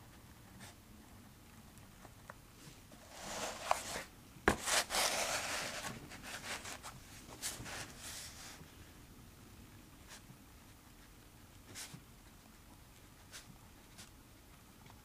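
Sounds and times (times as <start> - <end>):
paper rustling and scraping: 3.0 - 8.6.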